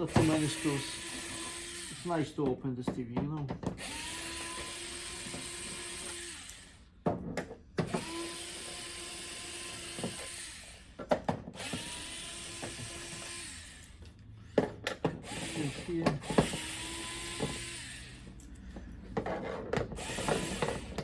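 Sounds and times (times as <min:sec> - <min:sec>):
electric screwdriver motor whirring: 0:00.0 - 0:02.4, 0:03.8 - 0:06.8, 0:07.9 - 0:11.0, 0:11.6 - 0:14.1, 0:15.2 - 0:18.6, 0:20.0 - 0:21.0.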